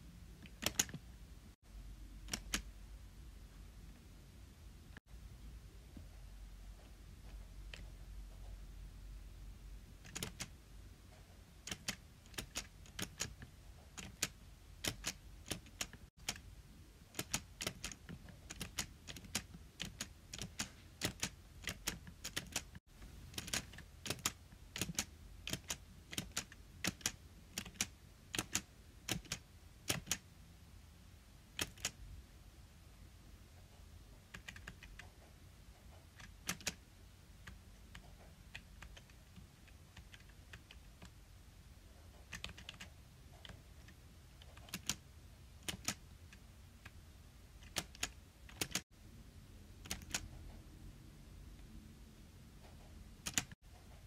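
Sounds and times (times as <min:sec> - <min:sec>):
sharp clicks: 0:00.4 - 0:01.0, 0:02.3 - 0:02.7, 0:31.6 - 0:32.0, 0:45.6 - 0:47.0, 0:47.6 - 0:48.8, 0:49.8 - 0:50.4, 0:53.2 - 0:53.6.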